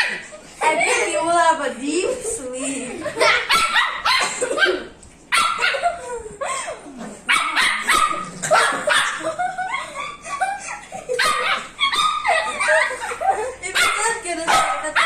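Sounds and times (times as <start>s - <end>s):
dog barking: 3.4s - 5.9s, 7.3s - 9.2s, 11.2s - 12.2s, 13.7s - 15.0s.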